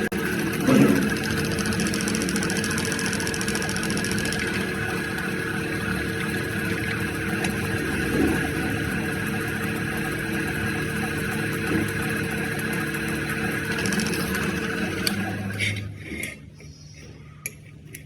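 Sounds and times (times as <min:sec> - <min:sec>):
electric grinder running: 0:00.0 - 0:15.2
fine rapid ticking: 0:00.2 - 0:07.0, 0:13.5 - 0:14.6.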